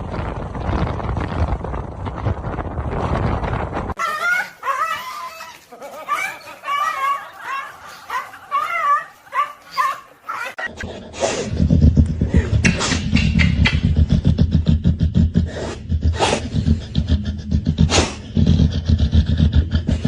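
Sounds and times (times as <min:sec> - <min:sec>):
animal crying: 0:04.0 - 0:10.8
loud rapid low rumble: 0:10.8 - 0:20.0.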